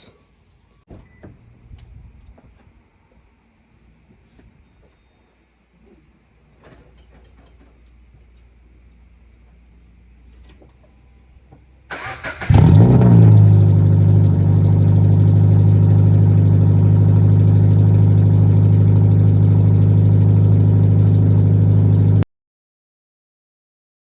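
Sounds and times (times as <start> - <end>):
car engine cranking and starting: 11.9 - 22.2
loud deep engine idle: 12.0 - 22.2.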